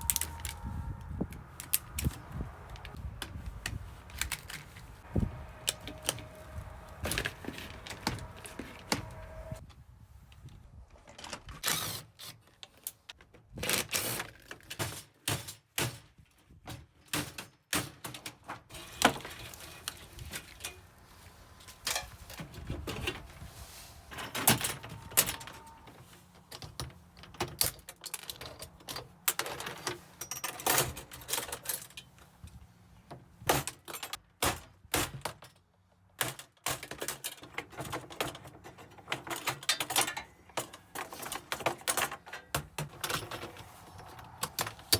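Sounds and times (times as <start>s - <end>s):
hand tools clanking on parts: 4.1s - 9.6s, 17.2s - 32.2s, 36.2s - 44.9s.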